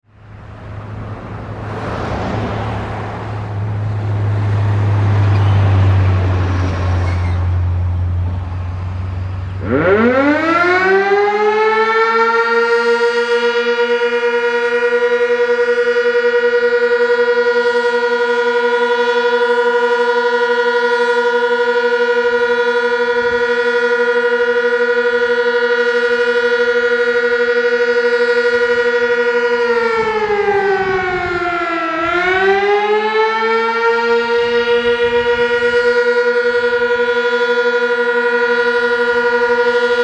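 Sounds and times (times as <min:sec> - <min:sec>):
road traffic rumble: 0:00.0 - 0:40.0
warning siren wailing: 0:00.0 - 0:40.0.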